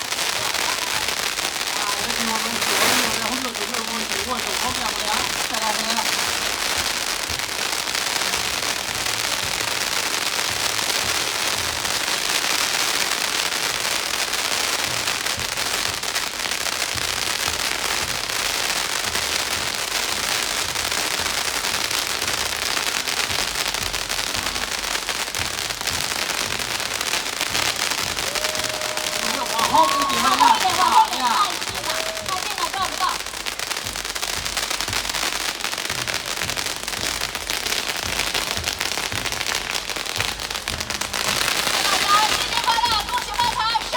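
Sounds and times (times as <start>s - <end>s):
firecrackers going off: 0.0s - 43.9s.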